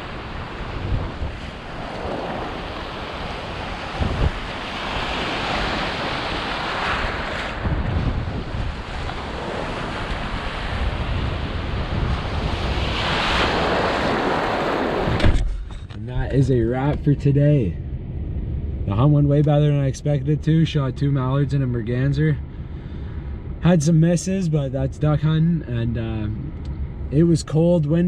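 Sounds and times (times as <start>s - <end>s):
big waves breaking on shore: 0.0s - 15.4s
wind gusts buffeting microphone: 0.0s - 28.0s.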